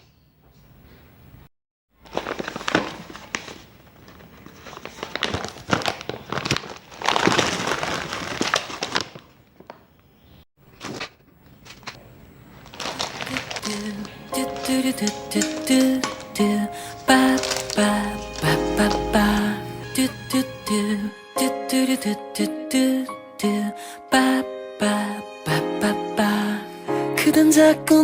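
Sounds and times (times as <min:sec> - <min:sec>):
crinkling and rustling: 0:02.0 - 0:20.6.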